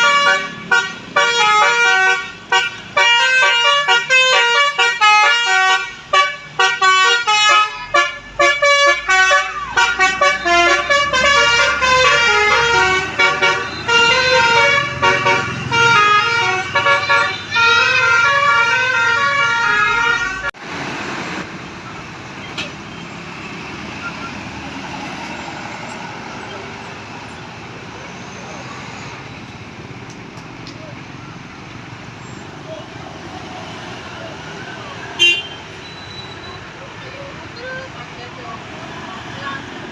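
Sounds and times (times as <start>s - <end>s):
musical air horn melody: 0.0s - 20.6s
engine rumbling: 0.0s - 39.9s
road noise: 0.0s - 39.9s.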